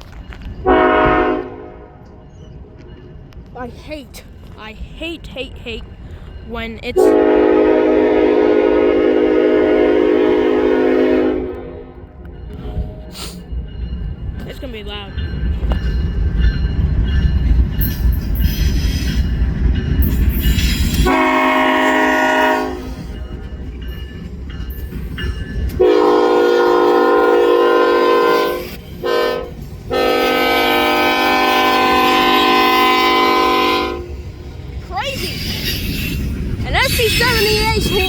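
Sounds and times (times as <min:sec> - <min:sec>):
train rumbling: 0:00.0 - 0:38.0
locomotive air horn: 0:00.6 - 0:02.0, 0:07.0 - 0:12.1, 0:21.0 - 0:23.2, 0:25.8 - 0:34.2.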